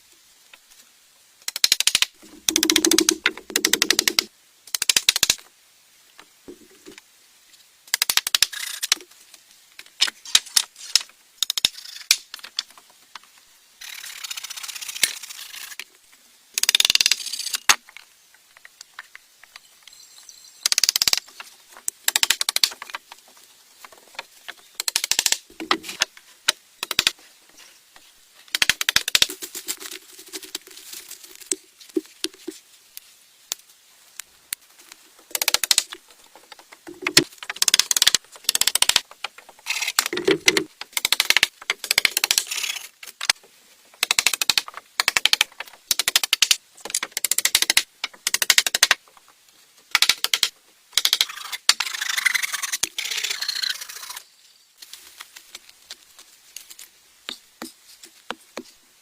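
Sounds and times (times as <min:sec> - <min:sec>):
tools tapping and knocking: 0:35.3 - 0:42.2.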